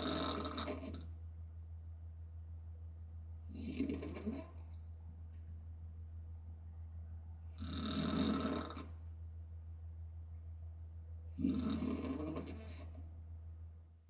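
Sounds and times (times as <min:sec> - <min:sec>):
woman snoring: 0:00.0 - 0:01.0, 0:03.5 - 0:04.6, 0:07.6 - 0:09.0, 0:11.4 - 0:13.0
steady low hum: 0:00.0 - 0:14.0.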